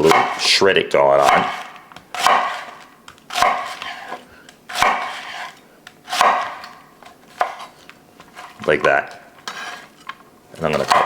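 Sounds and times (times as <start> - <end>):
knife shredding cabbage on board: 1.2 - 6.7.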